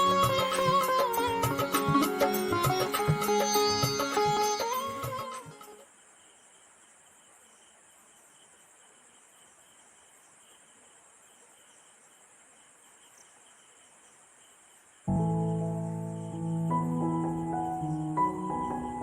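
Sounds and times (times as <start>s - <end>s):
music with held notes: 0.0s - 5.8s, 15.1s - 19.0s
insect chorus chirping: 0.0s - 19.0s.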